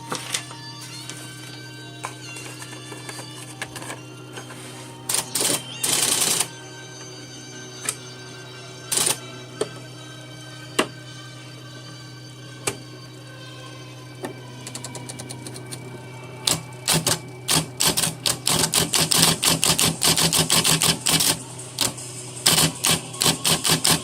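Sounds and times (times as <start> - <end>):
typewriter motor humming: 2.4 - 6.5, 8.9 - 9.3, 14.6 - 24.0.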